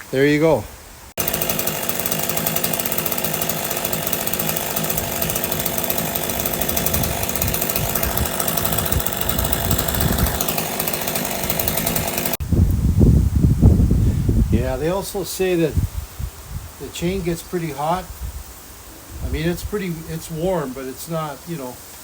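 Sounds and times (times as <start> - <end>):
chainsaw cutting wood: 1.2 - 12.4.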